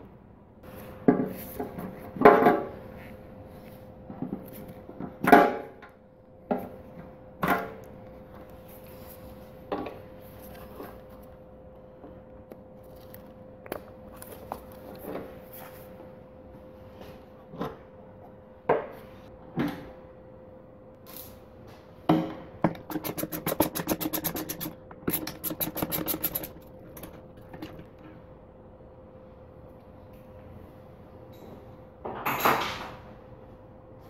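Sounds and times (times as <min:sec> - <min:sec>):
tools knocking and clinking on metal: 0:22.1 - 0:28.0
rapid even clicking: 0:22.7 - 0:28.0.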